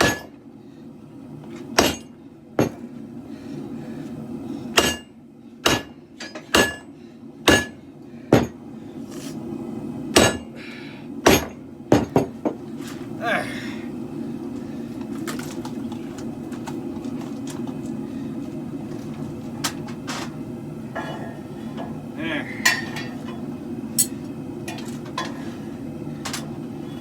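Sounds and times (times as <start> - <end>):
hammer striking steel on anvil: 0.0 - 0.4, 1.8 - 2.8, 4.8 - 6.9, 7.5 - 7.8, 10.2 - 10.5, 11.3 - 12.2, 22.6 - 23.4
forge burner roaring: 0.0 - 27.0.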